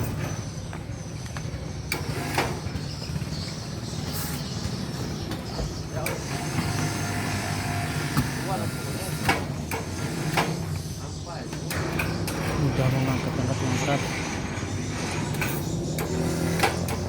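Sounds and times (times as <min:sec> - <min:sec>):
low machine hum: 0:00.0 - 0:17.0
sharp clanks: 0:11.5 - 0:17.0.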